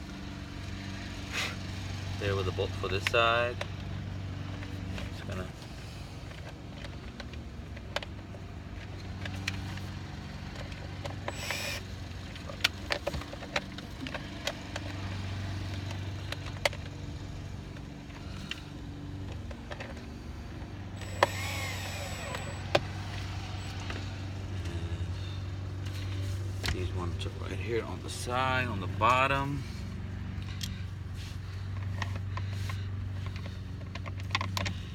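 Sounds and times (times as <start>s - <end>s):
steady low hum: 0.0s - 34.9s
small electric motor whirring: 10.7s - 12.5s, 20.1s - 26.2s.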